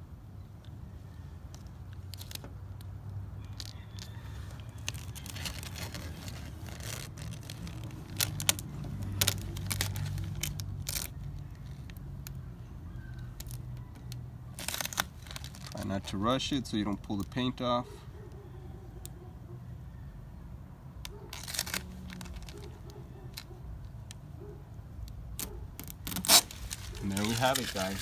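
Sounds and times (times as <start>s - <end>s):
tape crackling and tearing: 1.9s - 2.9s, 3.5s - 12.4s, 13.2s - 16.2s, 21.0s - 23.6s, 25.1s - 28.0s.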